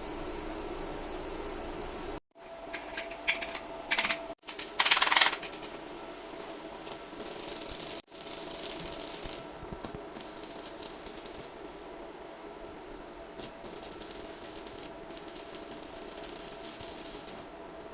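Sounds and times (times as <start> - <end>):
workshop hum: 0.0 - 17.9.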